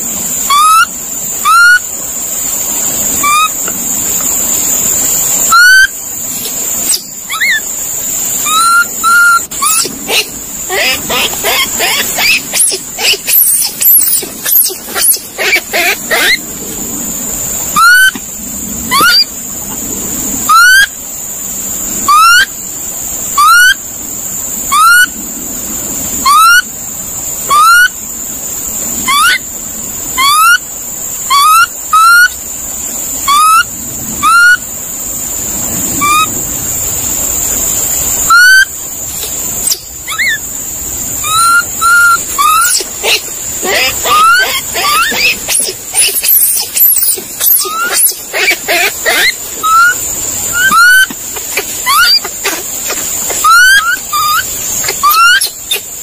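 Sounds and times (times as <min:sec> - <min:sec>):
high-pitched whine: 0:00.0 - 0:56.0
monkey whistled call: 0:00.4 - 0:01.9, 0:03.1 - 0:03.6, 0:05.4 - 0:06.0, 0:06.8 - 0:07.7, 0:08.3 - 0:16.4, 0:17.7 - 0:18.2, 0:18.9 - 0:19.3, 0:20.4 - 0:21.0, 0:22.0 - 0:22.6, 0:23.3 - 0:23.8, 0:24.7 - 0:25.2, 0:26.2 - 0:26.7, 0:27.4 - 0:28.0, 0:29.0 - 0:29.5, 0:30.2 - 0:30.6, 0:31.2 - 0:32.4, 0:33.2 - 0:34.6, 0:36.0 - 0:36.4, 0:38.2 - 0:38.8, 0:39.6 - 0:40.5, 0:41.2 - 0:56.0.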